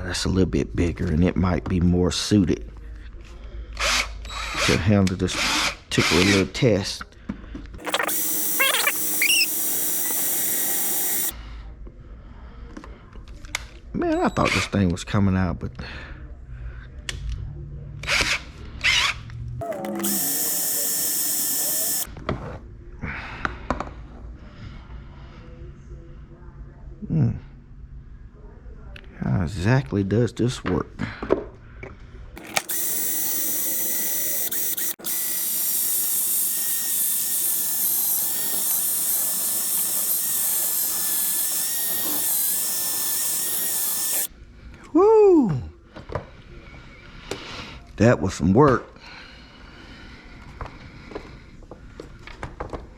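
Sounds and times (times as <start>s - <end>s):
power drill drilling metal: 7.8s - 11.3s, 19.6s - 22.1s, 32.4s - 44.3s
sharp clicks: 7.8s - 11.3s, 19.6s - 22.1s, 32.4s - 44.3s.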